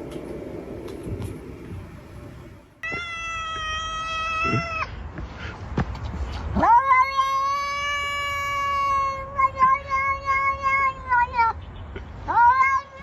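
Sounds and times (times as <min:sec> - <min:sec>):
cat meowing: 0:02.8 - 0:04.9.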